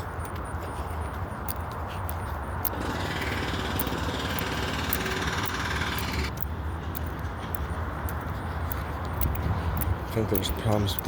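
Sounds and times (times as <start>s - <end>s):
diesel engine running: 2.6s - 7.0s
hydraulic breaker hammering: 2.7s - 6.3s.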